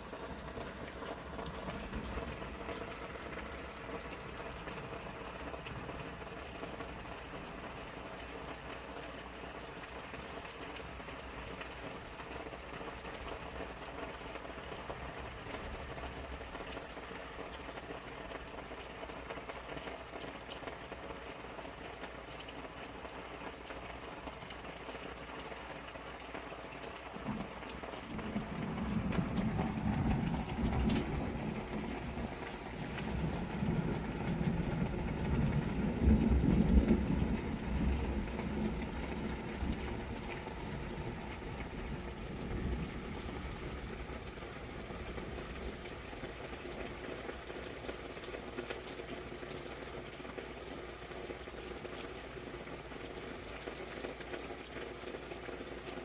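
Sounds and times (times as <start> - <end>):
low rumble of thunder: 0.0 - 7.4, 27.2 - 47.3
raindrops pattering on tarps: 0.0 - 56.0
steady rain falling: 0.0 - 56.0.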